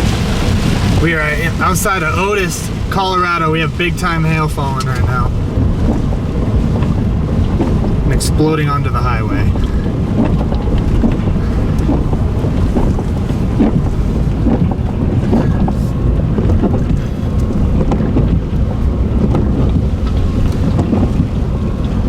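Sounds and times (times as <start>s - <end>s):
hailstones striking: 0.0s - 21.5s
gusty wind on microphone: 0.0s - 22.0s.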